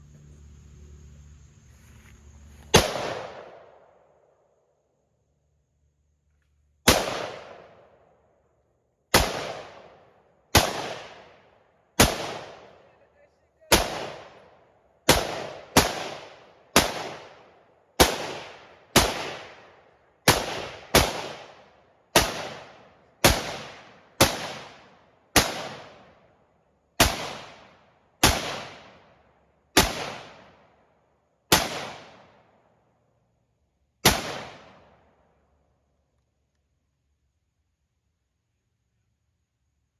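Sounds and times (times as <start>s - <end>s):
rifle shots with echo: 2.7s - 4.1s, 6.8s - 8.0s, 9.1s - 12.9s, 13.7s - 26.2s, 27.0s - 30.7s, 31.5s - 32.5s, 34.0s - 35.0s.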